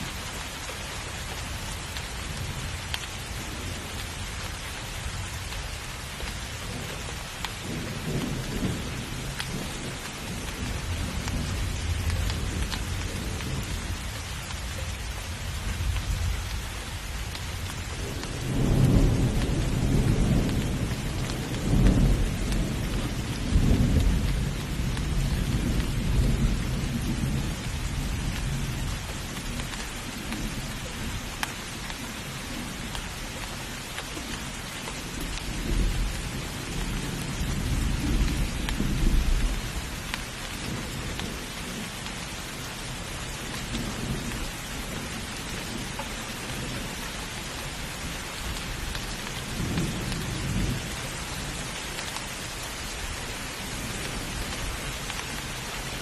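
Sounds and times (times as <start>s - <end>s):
heavy rain falling: 0.0s - 56.0s
thunder rumbling: 14.8s - 31.2s.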